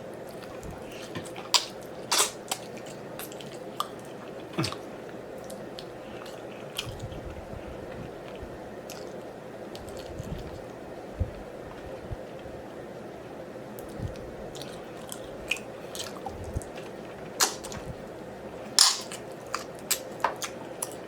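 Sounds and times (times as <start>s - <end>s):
person chewing and sucking meat: 0.3s - 9.2s, 13.8s - 18.0s.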